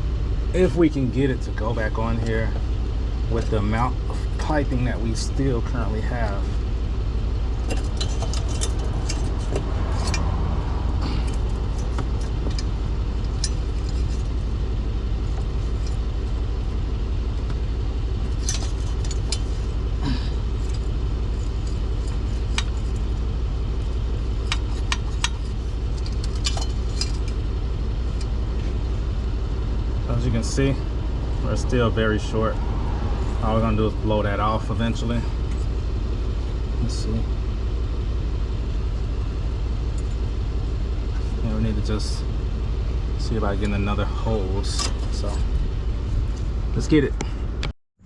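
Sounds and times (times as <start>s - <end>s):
low rumble: 0.0s - 47.7s
hose and pipe clinking: 24.3s - 27.4s.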